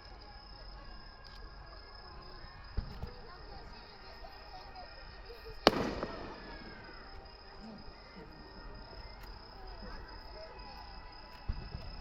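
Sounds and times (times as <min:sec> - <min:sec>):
murmur of voices: 0:00.0 - 0:12.0
insects chirring: 0:00.2 - 0:12.0
firework bang: 0:05.6 - 0:07.8.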